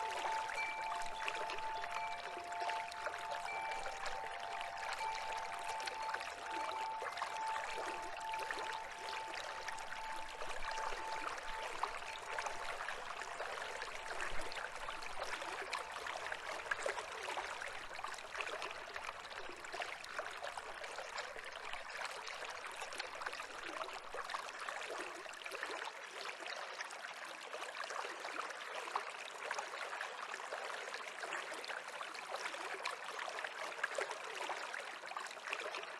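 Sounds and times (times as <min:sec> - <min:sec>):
stream babbling: 0:00.0 - 0:27.9.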